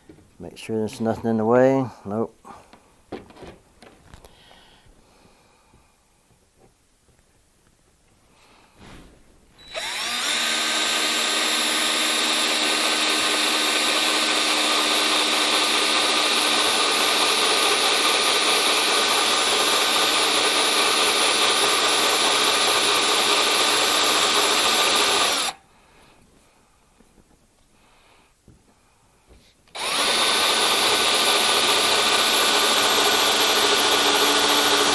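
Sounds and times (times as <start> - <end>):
electric drill boring: 9.6 - 25.6, 29.7 - 34.9.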